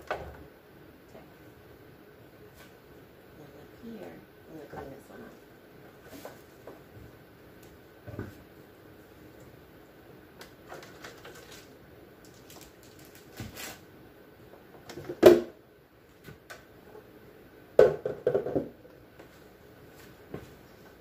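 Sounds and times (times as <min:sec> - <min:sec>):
bottles and jars knocking: 0:17.8 - 0:18.7.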